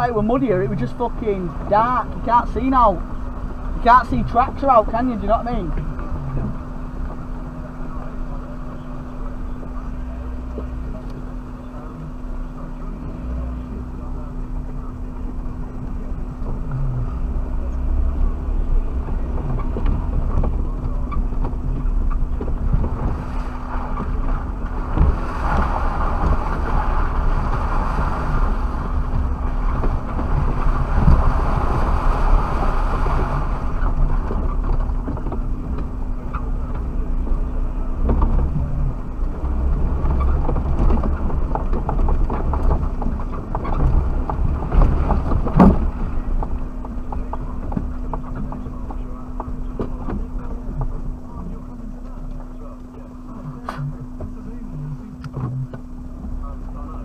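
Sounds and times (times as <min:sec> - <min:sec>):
engine and drivetrain rumble: 0:00.0 - 0:57.0
knocks and jolts from bumpy terrain: 0:38.0 - 0:51.2.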